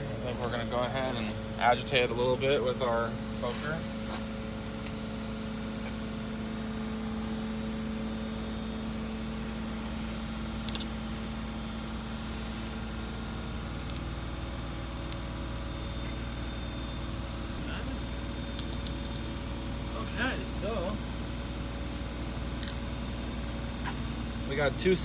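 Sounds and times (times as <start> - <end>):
low mechanical hum: 0.0 - 25.0.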